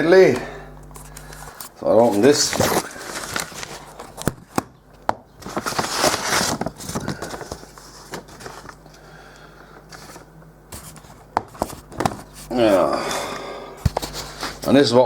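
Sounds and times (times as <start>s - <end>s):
paper packaging rustling: 0.9s - 4.7s, 5.4s - 9.0s, 9.9s - 12.9s, 13.8s - 14.8s.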